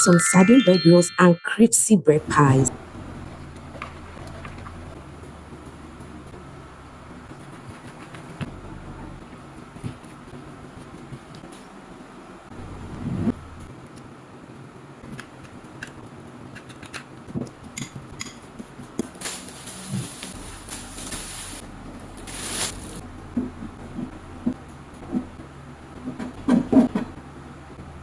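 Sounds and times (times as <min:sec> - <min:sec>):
hissing or rustling: 0:19.2 - 0:21.6, 0:22.2 - 0:23.0.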